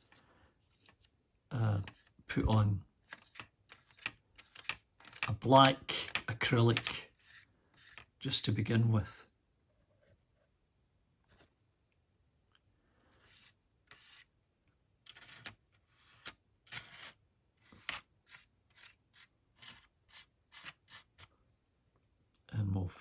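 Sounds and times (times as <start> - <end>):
scratchy paintbrush strokes: 0.0 - 1.1, 3.0 - 8.2, 13.1 - 14.3, 15.0 - 21.3.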